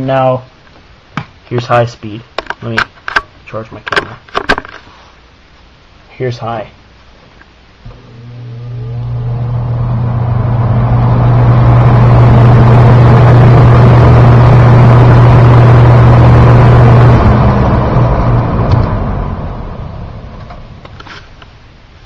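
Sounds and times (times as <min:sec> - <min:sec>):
electric motor hum: 0:07.8 - 0:20.4
fan air rushing: 0:07.8 - 0:21.1.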